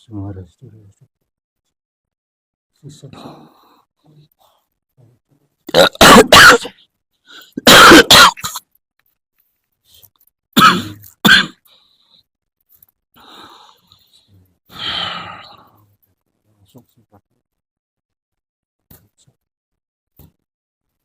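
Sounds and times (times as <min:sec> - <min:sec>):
person coughing hard: 0:05.7 - 0:06.8, 0:07.6 - 0:08.7, 0:10.6 - 0:11.6.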